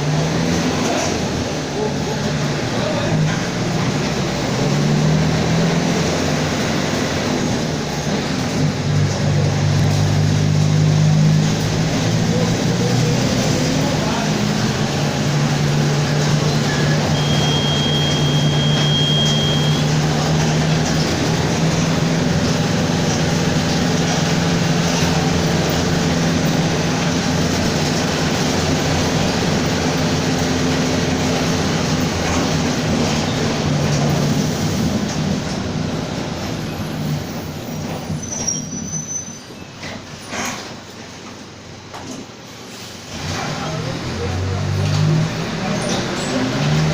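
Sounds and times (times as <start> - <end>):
bus diesel engine droning: 0.0 - 46.9
high whistle: 17.1 - 19.9.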